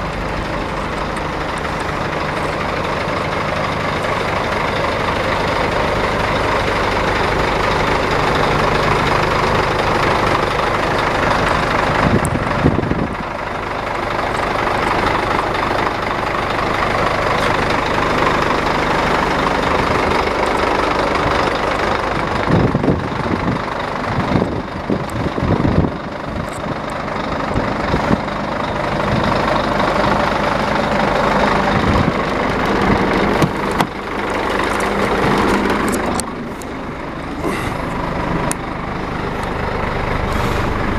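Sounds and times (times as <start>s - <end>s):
diesel truck engine idling: 0.0s - 40.9s
knocks and clunks: 31.2s - 38.1s.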